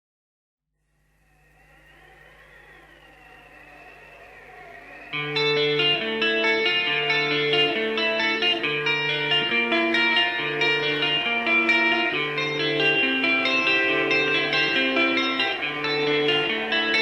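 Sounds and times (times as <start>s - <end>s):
electric guitar melody: 5.1s - 17.0s.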